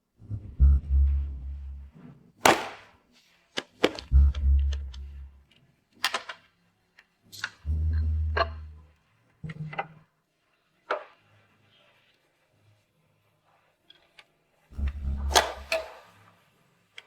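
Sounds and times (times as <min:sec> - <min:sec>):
deep bass note: 0:00.2 - 0:02.0, 0:04.0 - 0:05.4, 0:07.7 - 0:08.9, 0:14.8 - 0:15.7
sharp percussive hits: 0:02.5 - 0:02.9.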